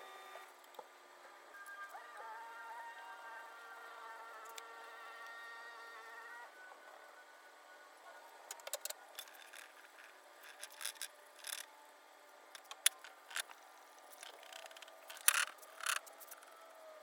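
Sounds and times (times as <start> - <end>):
sharp clicks: 12.6 - 16.4.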